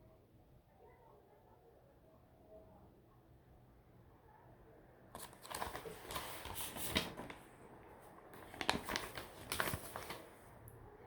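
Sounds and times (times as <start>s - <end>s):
clicking and rustling handling: 8.3s - 10.2s.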